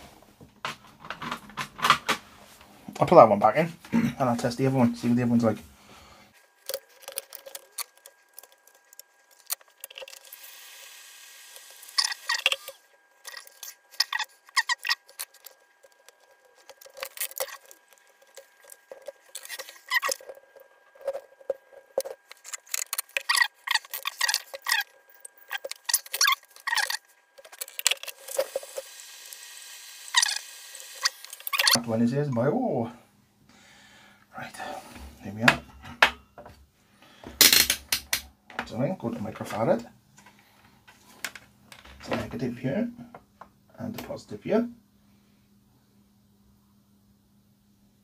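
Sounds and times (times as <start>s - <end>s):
tools clicking and rattling: 37.4s - 38.3s.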